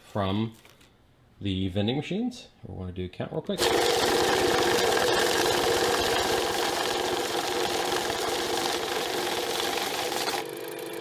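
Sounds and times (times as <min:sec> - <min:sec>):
bill counter riffling bills: 0:03.6 - 0:11.0.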